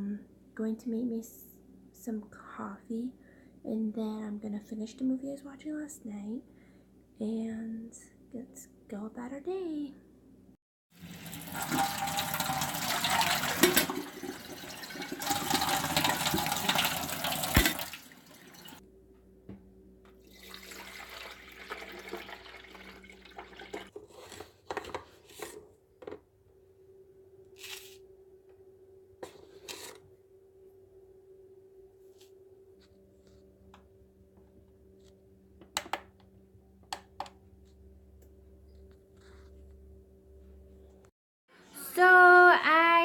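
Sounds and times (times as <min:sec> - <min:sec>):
faint steady hum: 0:00.0 - 0:10.6
water running from a tap: 0:11.0 - 0:18.8, 0:20.2 - 0:23.9.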